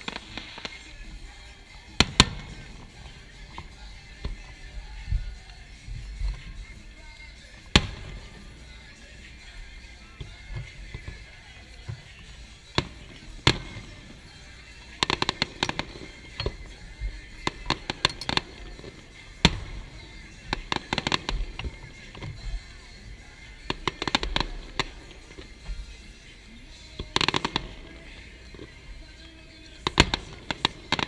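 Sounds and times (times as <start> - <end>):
crackling firework salvos: 0.0 - 28.9, 29.8 - 31.0
loud firework shell bursts: 1.7 - 4.6, 7.6 - 8.8, 10.9 - 22.2, 29.8 - 31.0.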